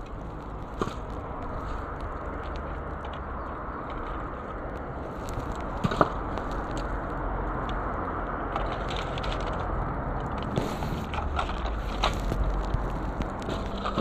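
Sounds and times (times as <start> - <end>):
rushing outdoor noise: 0.0 - 14.0
small clicks and crunches: 0.0 - 14.0.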